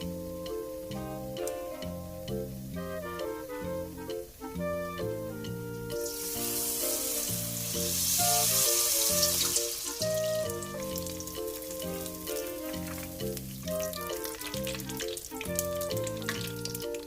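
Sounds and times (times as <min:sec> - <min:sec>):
background music: 0:00.0 - 0:17.0
food sizzling in hot oil: 0:05.9 - 0:17.0.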